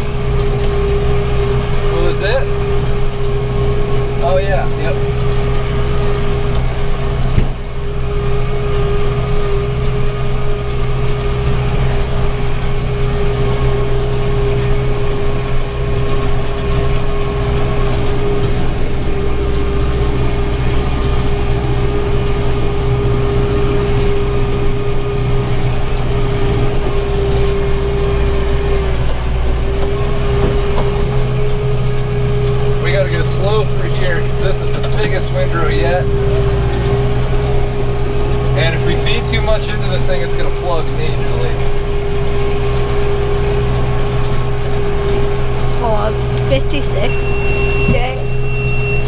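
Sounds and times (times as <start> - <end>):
tractor engine running: 0.0 - 49.0
baler whine: 44.4 - 49.0.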